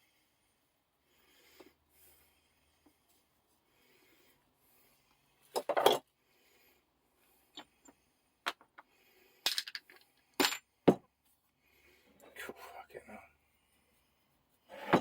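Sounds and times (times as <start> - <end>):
metal parts clinking and knocking: 9.4 - 10.7.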